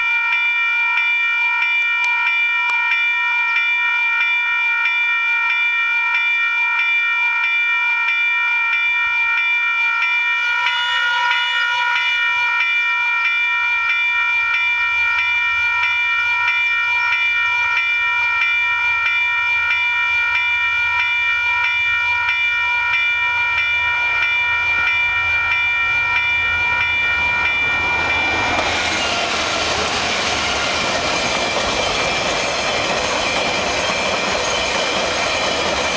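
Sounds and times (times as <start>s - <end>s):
level crossing bell ringing: 0.0s - 34.8s
train rumbling: 20.8s - 35.9s.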